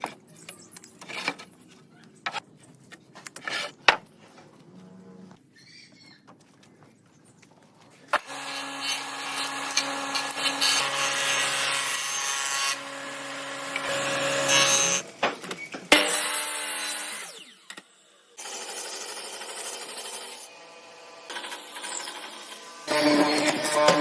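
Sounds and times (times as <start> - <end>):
power tool cutting wood: 8.2 - 15.1, 15.9 - 24.0.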